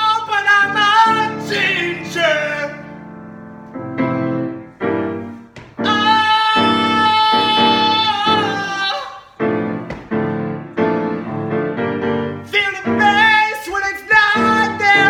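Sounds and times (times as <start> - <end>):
piano chords: 0.0 - 15.0
person singing long note: 5.8 - 9.3.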